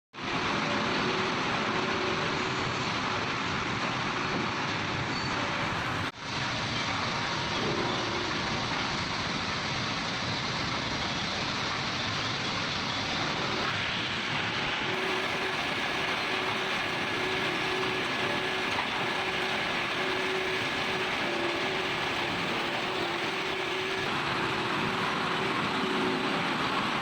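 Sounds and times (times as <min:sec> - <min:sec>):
wood crusher chipping timber: 0:14.9 - 0:24.1.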